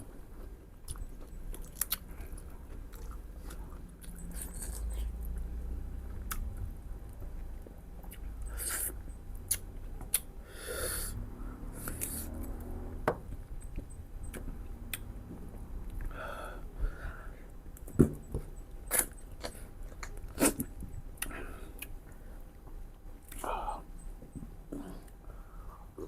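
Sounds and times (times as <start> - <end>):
chewing and lip smacking: 0.8 - 5.5, 6.1 - 6.6, 7.6 - 10.3.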